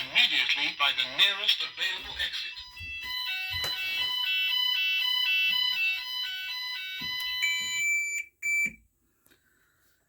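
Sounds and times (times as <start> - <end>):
fire alarm alternating tone: 2.4 - 8.8.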